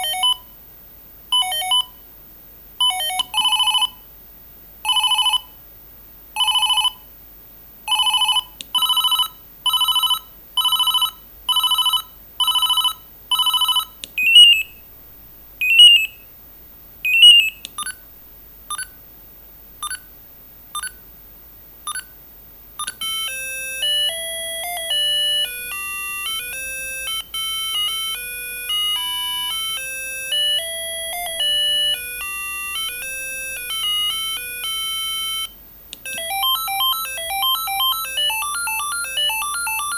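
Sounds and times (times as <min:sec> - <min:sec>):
electronic ringtone melody: 0:00.0 - 0:00.4, 0:01.4 - 0:01.9, 0:02.8 - 0:04.0, 0:07.9 - 0:14.7, 0:22.8 - 0:39.9
short chirps: 0:14.2 - 0:14.8, 0:15.6 - 0:16.2, 0:17.1 - 0:18.0
short electronic beeps: 0:14.2 - 0:14.8, 0:15.6 - 0:16.2, 0:17.1 - 0:18.0, 0:19.8 - 0:20.1, 0:20.8 - 0:21.0, 0:21.9 - 0:22.1.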